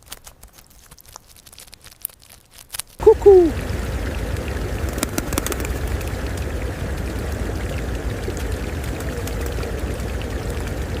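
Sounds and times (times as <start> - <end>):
rushing water: 3.0 - 11.0.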